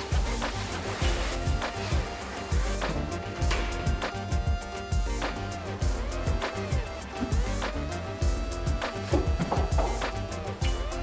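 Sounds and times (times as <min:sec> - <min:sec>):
snare drum: 0:00.0 - 0:04.6, 0:05.2 - 0:11.0
kick drum: 0:03.4 - 0:05.2, 0:05.8 - 0:07.6, 0:08.2 - 0:11.0.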